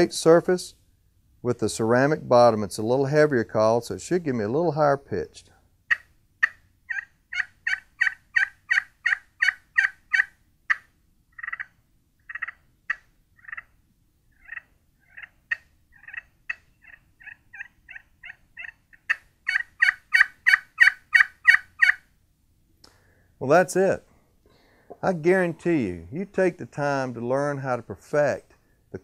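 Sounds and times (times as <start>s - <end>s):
turkey call yelps: 5.9s - 22.1s.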